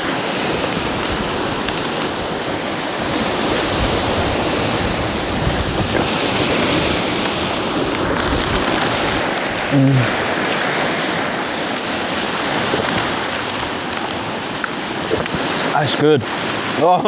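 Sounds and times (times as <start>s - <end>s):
wind buffeting microphone: 0.0s - 16.8s.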